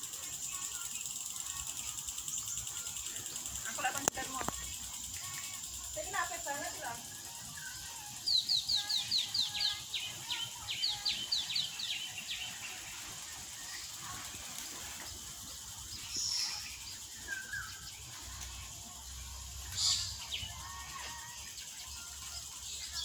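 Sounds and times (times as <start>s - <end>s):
bird chirping: 0.0s - 23.0s
high insect hum: 0.0s - 23.0s.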